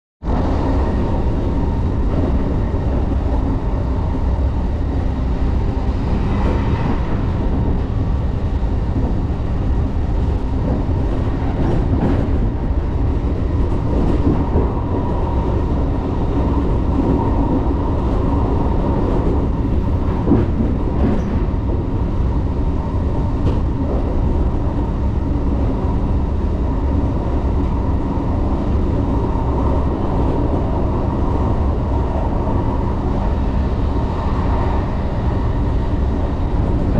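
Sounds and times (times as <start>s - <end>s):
train wheels rumbling on rail: 0.2s - 36.9s.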